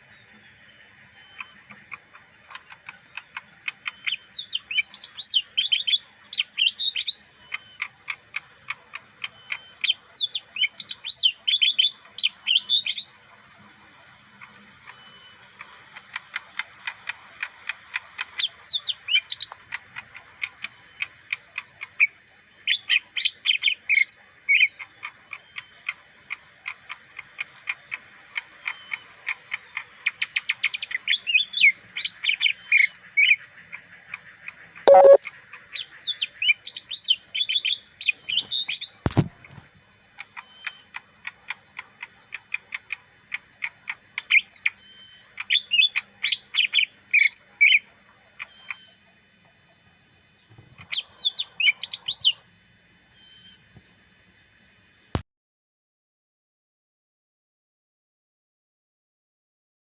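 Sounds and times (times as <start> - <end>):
bird chirping and warbling: 0.0 - 13.7, 28.4 - 34.0, 34.6 - 39.0, 44.2 - 49.0, 50.8 - 52.4
sharp click: 34.9 - 35.2.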